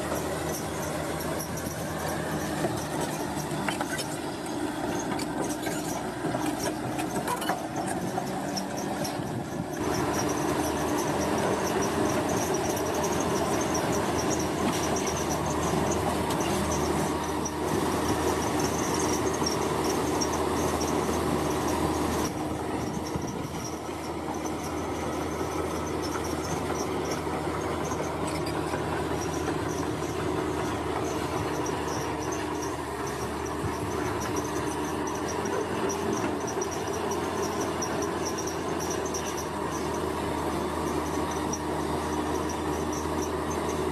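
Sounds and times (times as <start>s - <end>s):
earth-moving machine engine under load: 0.0s - 43.9s
insects chirping: 27.9s - 40.0s.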